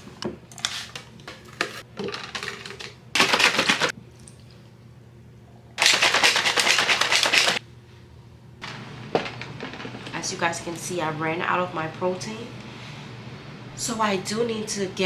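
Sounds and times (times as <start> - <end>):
shaker bottle rattling: 2.0 - 3.9, 5.8 - 7.6.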